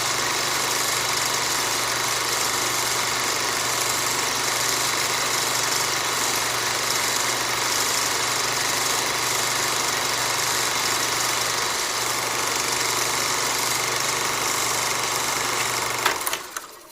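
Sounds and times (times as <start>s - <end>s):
film projector running: 0.0s - 16.9s.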